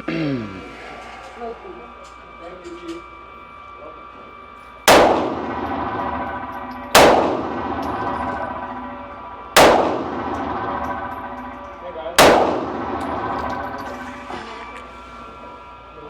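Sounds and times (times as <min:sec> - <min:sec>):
pistol shots echoing indoors: 0:04.9 - 0:14.3.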